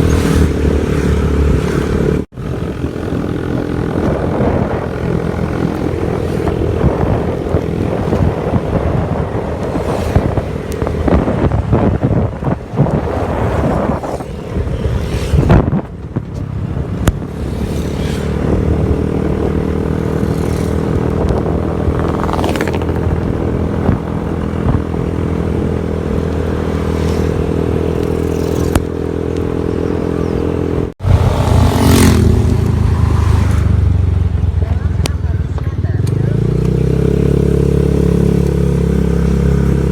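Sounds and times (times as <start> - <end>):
gusty noise: 0.0 - 39.9
engine humming steadily: 15.9 - 39.9.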